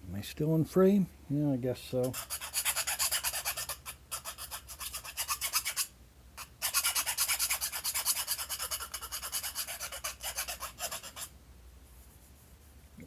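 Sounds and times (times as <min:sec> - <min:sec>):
needle file rasping on metal: 0:02.0 - 0:11.3.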